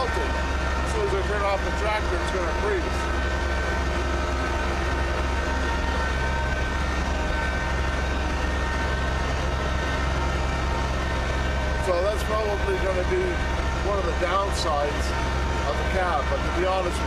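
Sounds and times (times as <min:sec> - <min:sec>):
heater fan blowing: 0:00.0 - 0:17.0
tractor diesel engine running: 0:00.0 - 0:17.0.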